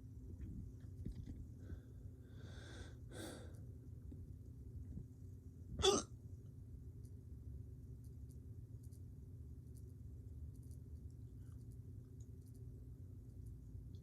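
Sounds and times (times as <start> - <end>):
man breathing audibly: 1.5 - 3.7
sharp hiccup: 5.8 - 6.1.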